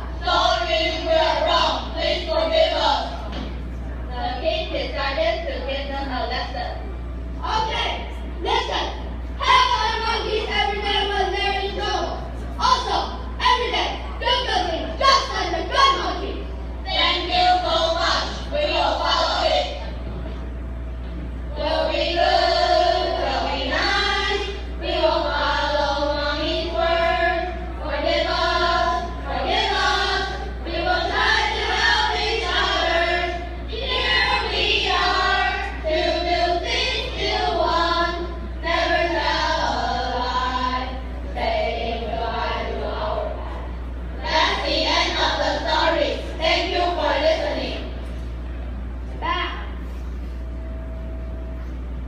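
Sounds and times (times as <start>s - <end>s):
low hum: 0.0s - 52.0s
children singing together: 21.5s - 47.8s.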